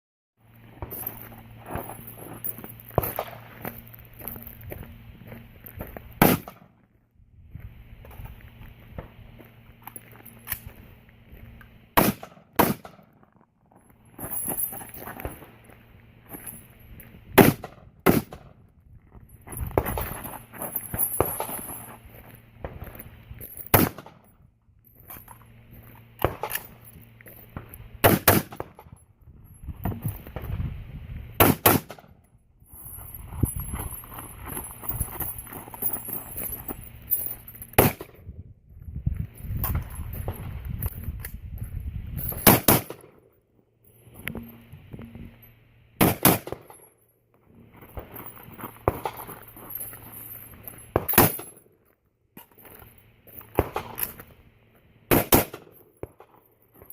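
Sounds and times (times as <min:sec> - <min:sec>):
rifle shots: 0:06.2 - 0:06.7, 0:12.0 - 0:13.2, 0:17.4 - 0:18.6, 0:23.7 - 0:24.2, 0:28.0 - 0:28.8, 0:31.4 - 0:32.1, 0:37.8 - 0:38.2, 0:42.4 - 0:43.1, 0:46.0 - 0:46.7, 0:55.1 - 0:55.8.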